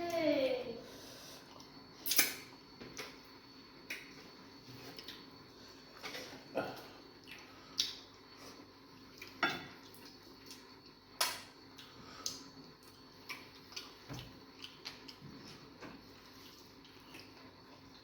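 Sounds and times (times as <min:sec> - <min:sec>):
eating sounds: 0:09.0 - 0:18.0.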